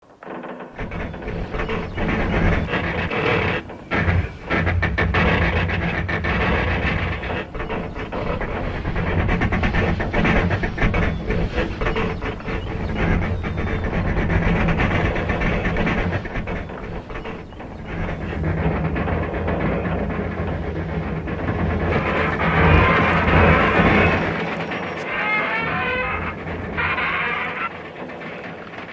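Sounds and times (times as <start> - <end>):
metal groaning and creaking: 0.1 - 28.9.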